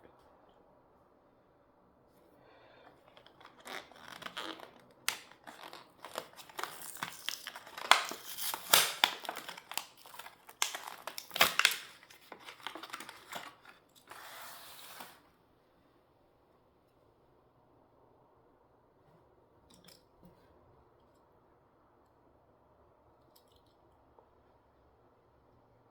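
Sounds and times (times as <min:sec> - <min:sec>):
plastic bubble crinkling: 0:03.0 - 0:14.2
cardboard tearing: 0:03.2 - 0:15.2.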